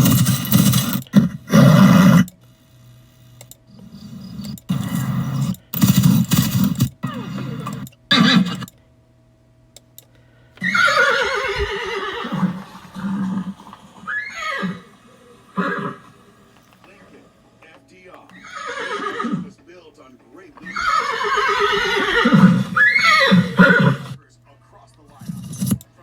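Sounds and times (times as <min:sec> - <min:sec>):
horse whinnying: 0:00.0 - 0:02.3, 0:05.8 - 0:08.7, 0:10.6 - 0:16.2, 0:18.4 - 0:19.5, 0:20.6 - 0:24.2.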